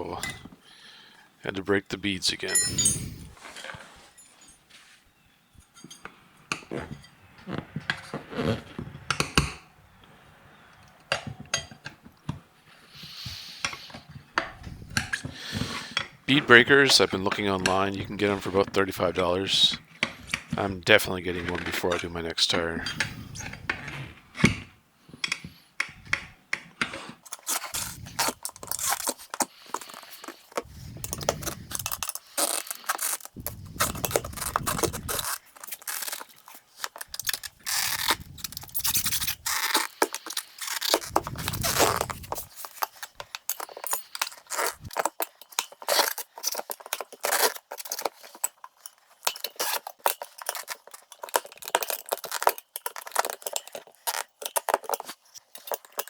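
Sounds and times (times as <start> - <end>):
tire levers scraping and clicking: 22.8 - 56.0.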